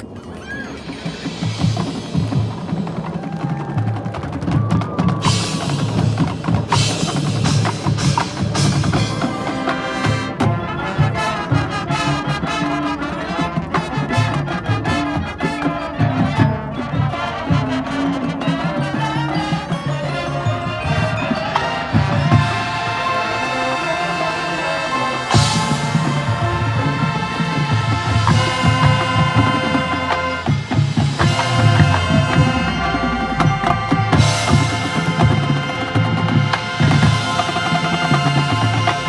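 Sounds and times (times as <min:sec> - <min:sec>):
drumline: 0:00.0 - 0:39.0
mallet percussion: 0:00.0 - 0:39.0
winds and brass held notes: 0:00.0 - 0:39.0.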